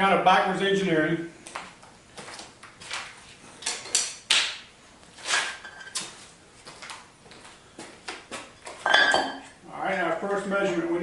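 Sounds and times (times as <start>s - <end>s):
tools scraping and knocking: 5.2s - 6.2s.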